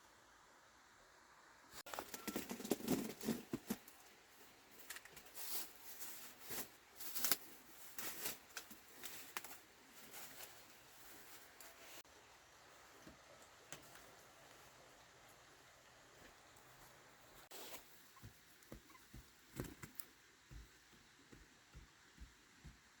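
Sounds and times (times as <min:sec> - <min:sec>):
rustling and scraping: 0:01.9 - 0:04.1, 0:16.2 - 0:22.9.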